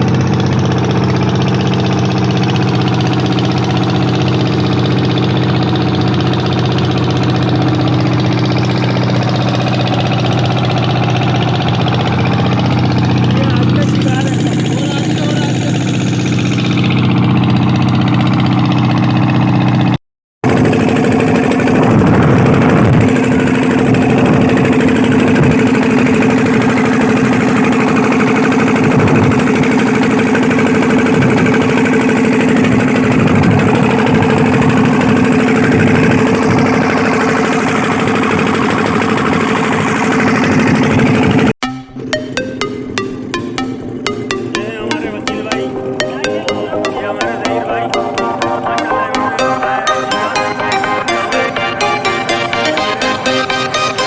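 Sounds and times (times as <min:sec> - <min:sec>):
engine running steadily: 0:00.0 - 0:19.8, 0:20.5 - 0:41.4.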